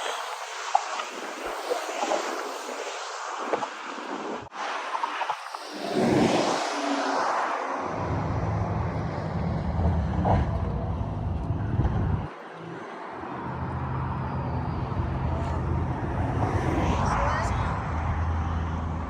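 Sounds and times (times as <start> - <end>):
low engine hum: 7.9 - 19.0.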